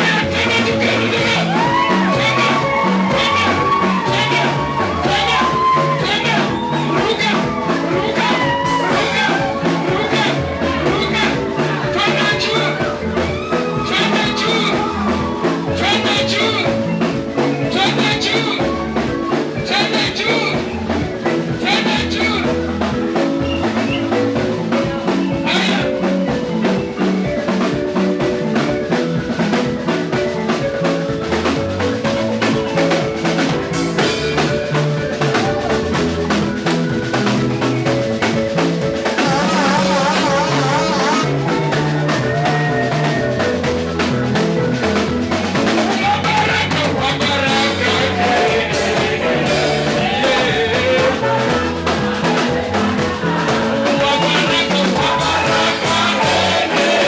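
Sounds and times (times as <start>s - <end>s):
drum kit with rimshots: 0.0s - 57.0s
sustained keyboard chords: 0.0s - 57.0s
person singing: 39.1s - 43.8s, 45.6s - 57.0s.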